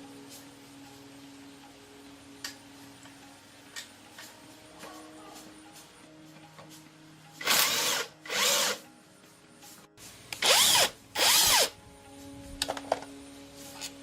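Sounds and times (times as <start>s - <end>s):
power drill bursts: 7.4s - 8.8s, 10.4s - 11.7s.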